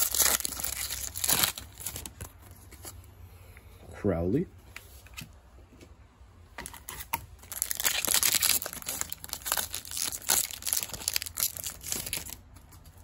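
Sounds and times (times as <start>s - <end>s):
plastic and foil packaging crinkling: 0.0s - 3.0s, 6.6s - 13.0s.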